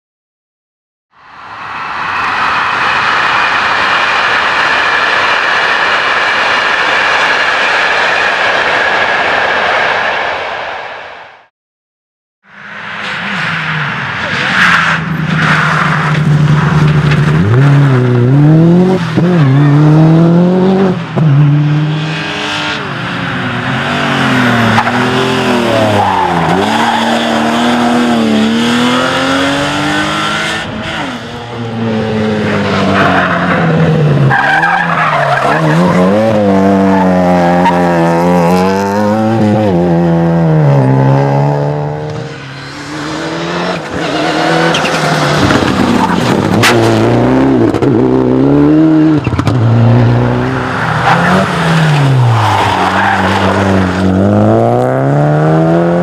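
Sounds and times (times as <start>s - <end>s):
rally car engines revving: 12.6s - 56.0s
tyres skidding: 12.9s - 56.0s.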